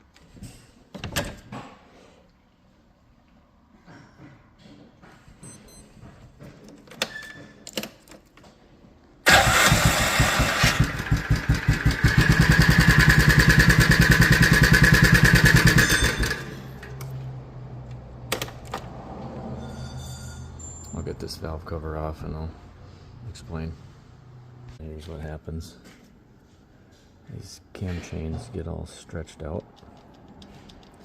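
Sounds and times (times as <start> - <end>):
engine rattling: 9.3 - 17.2.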